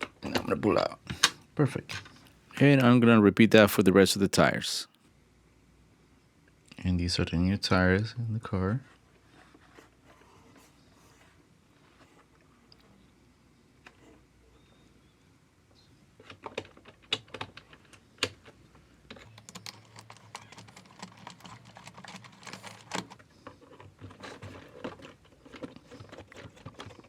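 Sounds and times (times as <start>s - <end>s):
plastic wheel clicks and rattles: 16.2s - 27.0s.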